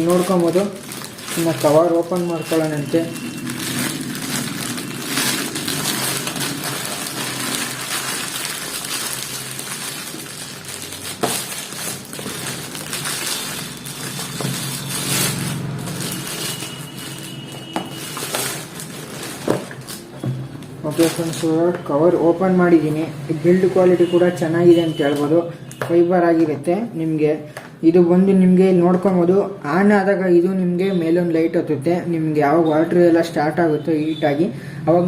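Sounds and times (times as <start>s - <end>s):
plastic wrapping crinkling: 0.0s - 23.0s.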